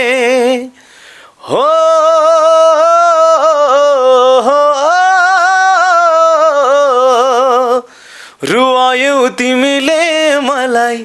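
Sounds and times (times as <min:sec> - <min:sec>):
man singing unaccompanied: 0:00.0 - 0:11.0.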